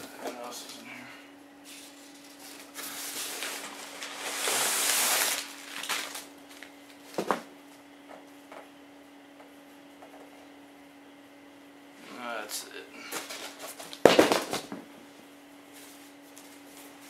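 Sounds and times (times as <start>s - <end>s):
faint steady hum: 0.0s - 17.0s
packing material rustling: 1.7s - 6.8s.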